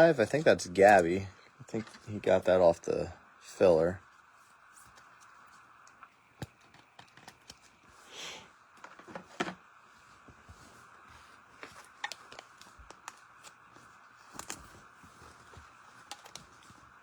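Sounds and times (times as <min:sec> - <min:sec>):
faint hum: 0:00.0 - 0:17.0
cards and wrappers clicking and rustling: 0:06.0 - 0:07.9, 0:11.4 - 0:17.0.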